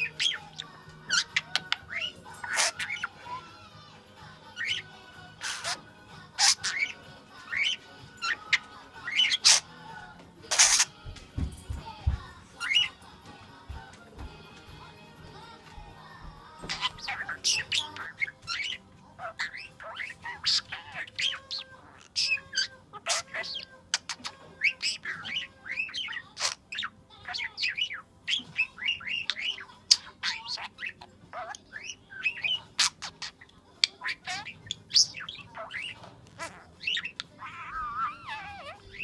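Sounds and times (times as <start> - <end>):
bird warbling: 0.0 - 11.0, 12.6 - 13.0, 16.5 - 39.0
birds chirping and squawking: 0.0 - 39.0
sharp bird clicks: 0.2 - 2.0.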